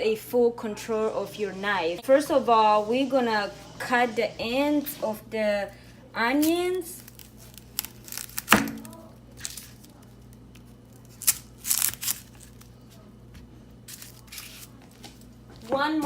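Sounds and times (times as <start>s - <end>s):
onion skin crackling: 6.2s - 13.0s, 13.8s - 15.4s.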